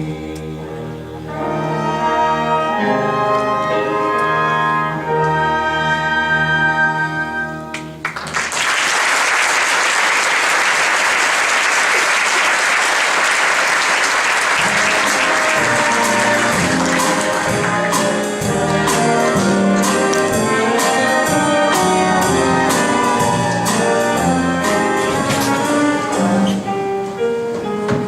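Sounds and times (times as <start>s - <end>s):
orchestral music: 0.0s - 8.6s, 12.0s - 28.0s
audience applauding: 8.0s - 20.6s.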